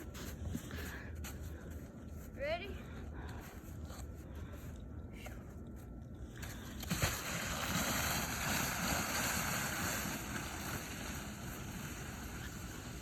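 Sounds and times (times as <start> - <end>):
sled hissing over snow: 6.7 - 13.0
sled thump: 6.8 - 11.7.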